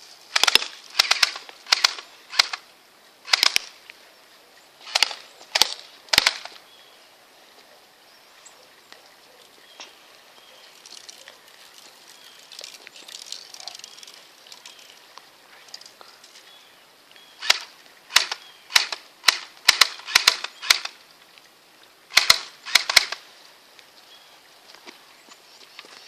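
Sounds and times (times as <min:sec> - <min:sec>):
airsoft gun shots: 0:00.3 - 0:02.6, 0:03.3 - 0:03.7, 0:04.9 - 0:06.6, 0:17.4 - 0:21.0, 0:22.1 - 0:23.2.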